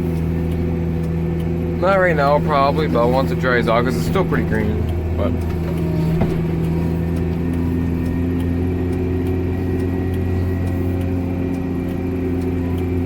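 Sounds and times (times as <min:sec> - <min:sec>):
tractor engine running: 0:00.0 - 0:13.0.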